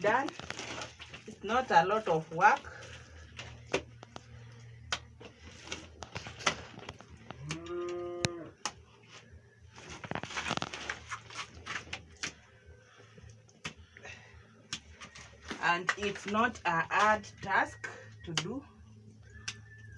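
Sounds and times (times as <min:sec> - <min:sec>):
cow mooing: 0:07.3 - 0:08.6.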